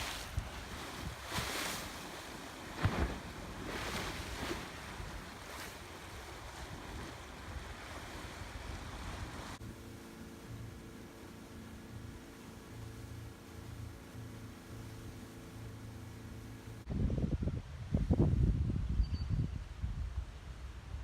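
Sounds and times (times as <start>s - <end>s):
wind buffeting microphone: 0.0s - 9.6s, 16.8s - 21.0s
lake waves washing on shore: 0.0s - 16.9s.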